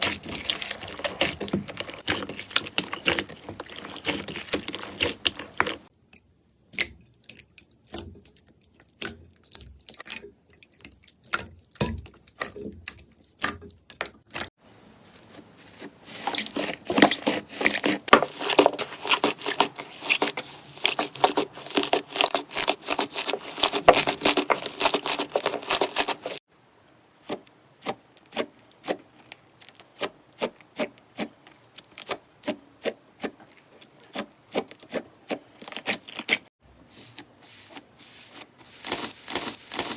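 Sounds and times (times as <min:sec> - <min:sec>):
slime squishing and popping: 0:00.0 - 0:05.8.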